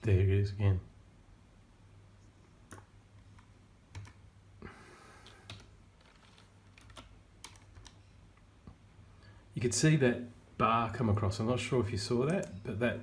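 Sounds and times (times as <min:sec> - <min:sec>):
computer keyboard clicks: 0:03.4 - 0:04.2, 0:05.4 - 0:08.0
soft rustle: 0:05.6 - 0:09.2.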